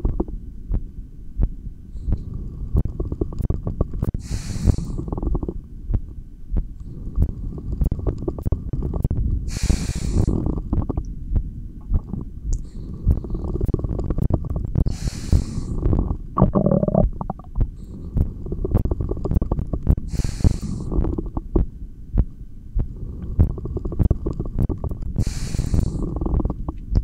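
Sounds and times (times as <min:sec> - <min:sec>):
stomach gurgling: 0:00.0 - 0:00.4, 0:02.2 - 0:05.6, 0:07.2 - 0:11.1, 0:11.8 - 0:21.7, 0:22.8 - 0:27.0
person breathing: 0:01.9 - 0:03.0, 0:04.2 - 0:05.5, 0:06.8 - 0:08.0, 0:09.5 - 0:10.7, 0:12.6 - 0:14.0, 0:14.8 - 0:16.2, 0:17.6 - 0:18.8, 0:20.0 - 0:21.3, 0:22.8 - 0:24.6, 0:25.2 - 0:26.6.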